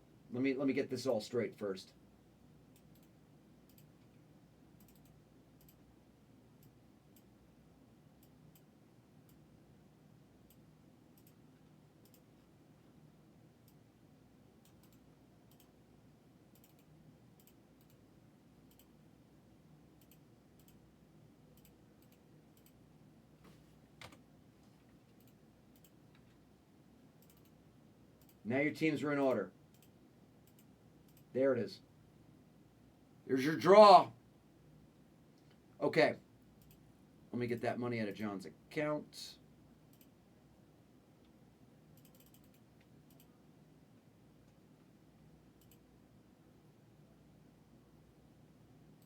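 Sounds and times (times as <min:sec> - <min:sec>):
computer mouse clicks: 0:02.7 - 0:04.2, 0:04.8 - 0:05.9, 0:06.6 - 0:07.3, 0:10.4 - 0:12.4, 0:13.6 - 0:13.8, 0:14.6 - 0:15.8, 0:16.5 - 0:18.0, 0:18.7 - 0:19.0, 0:20.0 - 0:20.8, 0:21.5 - 0:22.8, 0:23.4 - 0:24.2, 0:25.0 - 0:26.4, 0:27.2 - 0:27.6, 0:28.2 - 0:28.4, 0:29.7 - 0:31.3, 0:36.6 - 0:36.9, 0:39.9 - 0:40.2, 0:41.2 - 0:43.4, 0:45.6 - 0:45.9.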